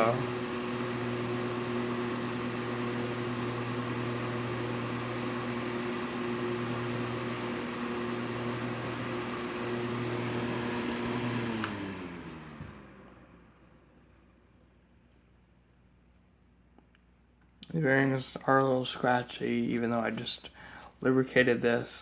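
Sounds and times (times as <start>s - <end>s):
fan motor hum with rushing air: 0.0s - 13.6s
fan switch click: 11.6s - 11.8s.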